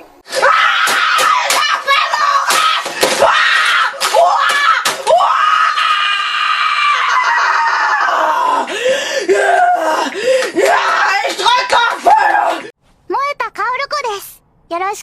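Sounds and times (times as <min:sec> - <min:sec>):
boy screaming: 0:00.3 - 0:08.7, 0:09.3 - 0:12.7.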